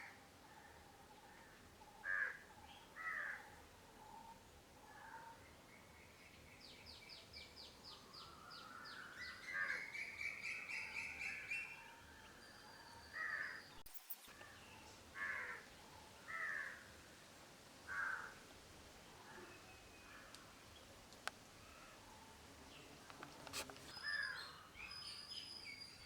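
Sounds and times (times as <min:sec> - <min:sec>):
crows cawing: 0:02.0 - 0:02.4, 0:03.0 - 0:03.4, 0:15.2 - 0:15.7, 0:16.3 - 0:16.9, 0:17.9 - 0:18.4.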